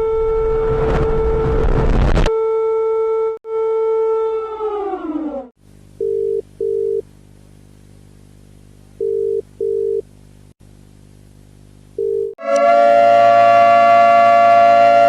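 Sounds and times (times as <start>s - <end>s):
multi-tone siren wail: 0.0s - 5.6s, 12.4s - 15.0s
steady low hum: 5.6s - 12.4s.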